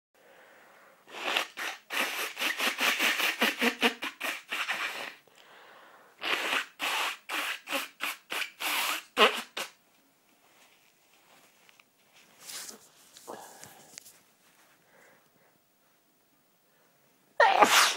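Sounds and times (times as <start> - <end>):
person blowing nose: 1.1 - 5.2, 6.2 - 9.8, 17.4 - 17.9.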